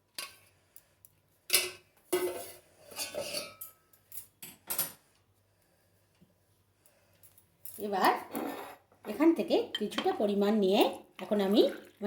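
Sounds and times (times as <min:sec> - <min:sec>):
kitchen utensils clinking: 0:01.5 - 0:05.0.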